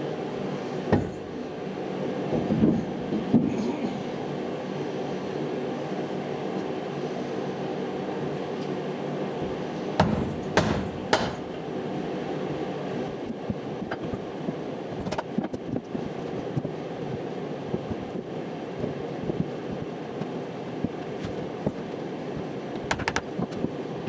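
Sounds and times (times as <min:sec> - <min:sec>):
machine hum: 0:09.0 - 0:13.1
loud knocks: 0:10.0 - 0:11.7.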